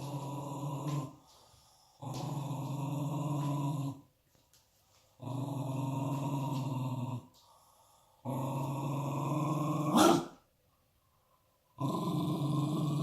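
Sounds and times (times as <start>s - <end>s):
dog growling: 0.0s - 1.2s, 2.0s - 4.1s, 5.2s - 7.4s, 8.2s - 10.4s, 11.8s - 13.0s.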